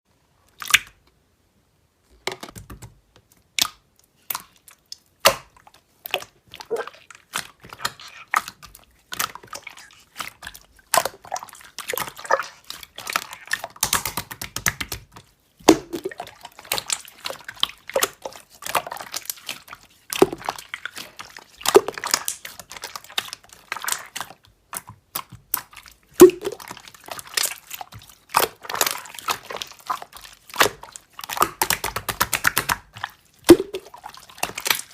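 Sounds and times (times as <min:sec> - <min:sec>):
slime squeezed by hand: 0:05.2 - 0:14.5, 0:25.5 - 0:34.9.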